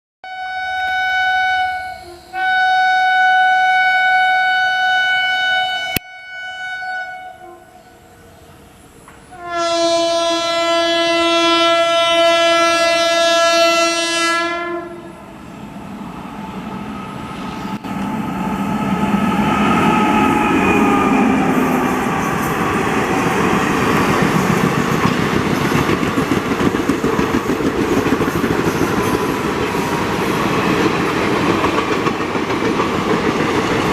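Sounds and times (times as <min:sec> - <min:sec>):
locomotive horn blasts: 0:00.2 - 0:07.8, 0:09.3 - 0:15.2.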